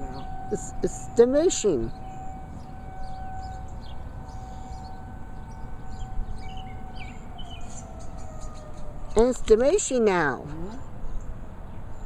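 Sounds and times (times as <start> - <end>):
warning siren steady tone: 0.0 - 9.6.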